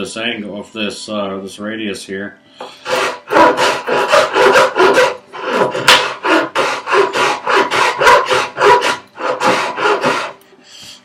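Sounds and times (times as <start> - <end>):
metal file rasping wood: 2.7 - 10.4.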